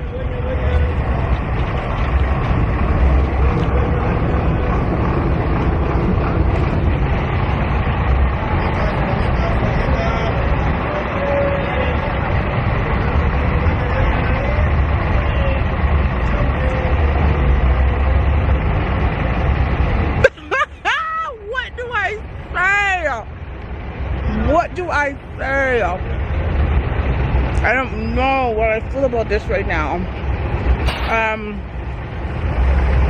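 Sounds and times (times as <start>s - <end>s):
heavy low rumble: 0.0s - 20.9s.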